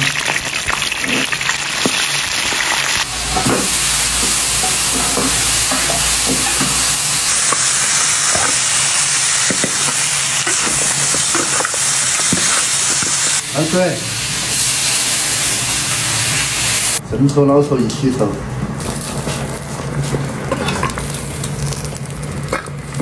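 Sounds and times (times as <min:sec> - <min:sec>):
pork bones sizzling in a pan: 0:00.0 - 0:17.0, 0:18.0 - 0:23.0
spatula scraping a pan: 0:03.0 - 0:13.3.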